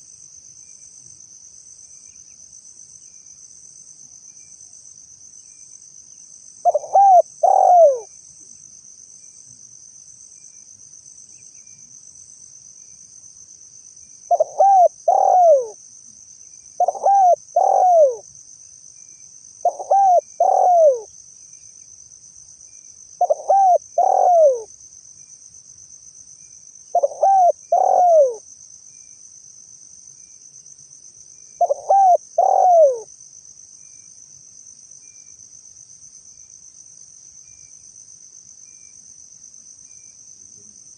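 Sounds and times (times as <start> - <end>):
high insect trill: 0.0 - 40.9
dove cooing: 6.6 - 8.1, 14.3 - 15.8, 16.8 - 18.2, 19.6 - 21.1, 23.2 - 24.7, 26.9 - 28.4, 31.6 - 33.1.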